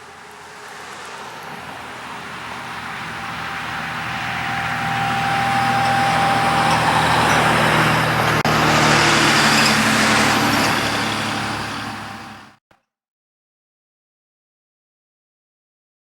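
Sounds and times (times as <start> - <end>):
vehicle passing by: 0.0 - 12.6
faint warning siren tone: 2.1 - 8.3.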